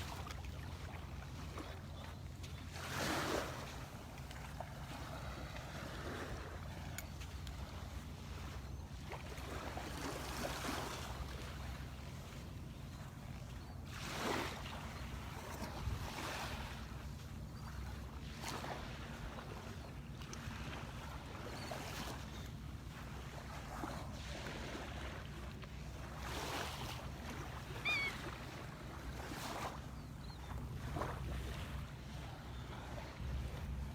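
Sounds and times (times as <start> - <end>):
surf waves breaking: 0.0 - 13.2, 13.8 - 33.9
wind rumble on microphone: 15.2 - 17.6.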